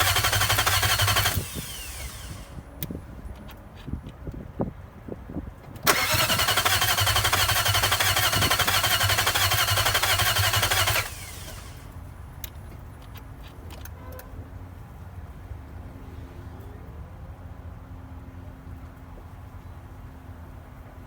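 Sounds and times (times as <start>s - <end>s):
car engine cranking on starter: 0.0s - 2.6s, 5.8s - 12.0s.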